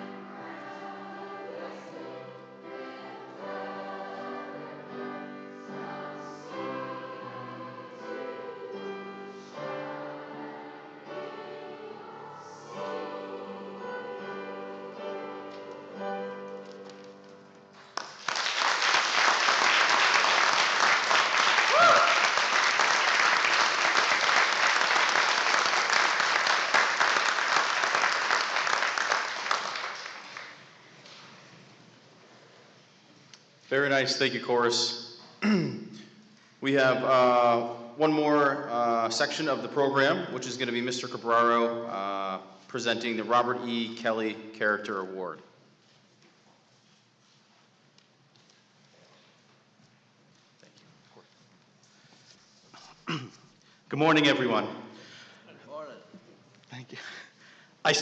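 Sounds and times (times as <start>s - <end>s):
chorus singing in harmony: 0.0s - 16.8s
audience applauding: 17.8s - 30.7s.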